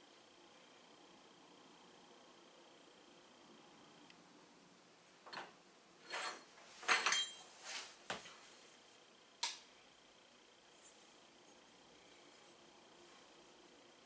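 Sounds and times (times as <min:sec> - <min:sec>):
small metal parts clinking: 0:06.0 - 0:07.4.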